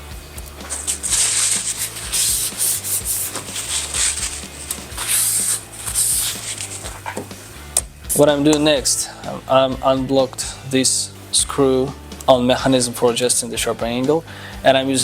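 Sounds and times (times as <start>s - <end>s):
sharpening stone rasping on blade: 0.7s - 7.3s.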